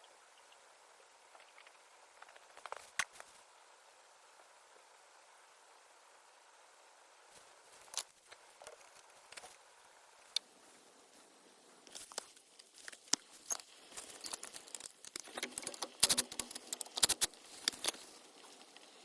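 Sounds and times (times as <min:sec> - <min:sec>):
rustling of things handled: 0:10.6 - 0:18.8.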